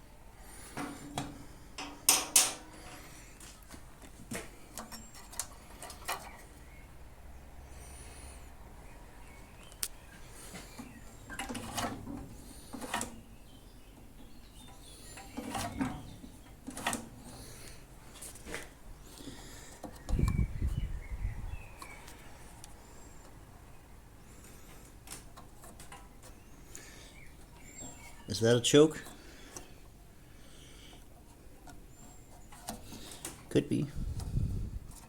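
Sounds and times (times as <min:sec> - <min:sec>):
metal parts clattering: 0:01.8 - 0:03.1.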